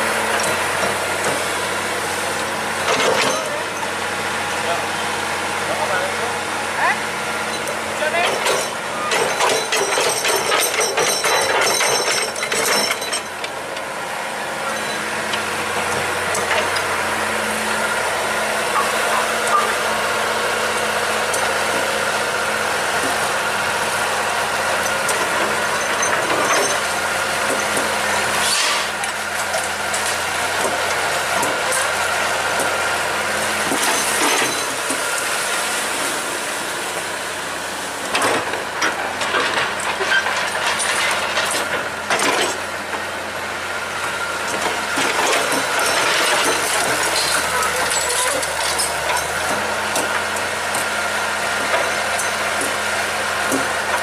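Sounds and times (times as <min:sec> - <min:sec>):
excavator engine running: 0:00.0 - 0:54.0
metallic clanks and knocks: 0:08.2 - 0:13.5.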